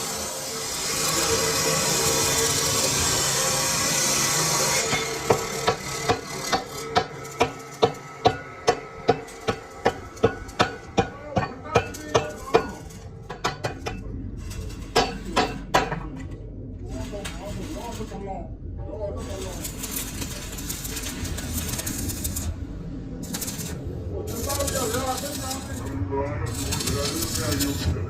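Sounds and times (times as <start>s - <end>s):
loud hiss: 0.0s - 6.2s
hammer striking metal: 4.8s - 14.1s, 14.9s - 16.2s.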